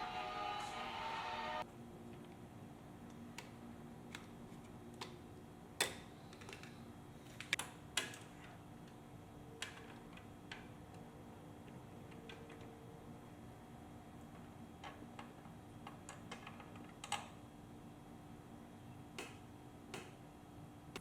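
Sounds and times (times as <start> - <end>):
background music: 0.0 - 1.6.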